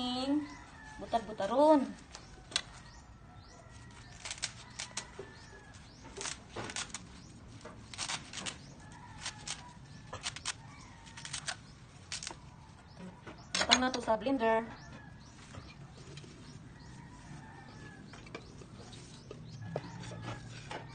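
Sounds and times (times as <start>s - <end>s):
leaves being torn: 3.7s - 12.5s.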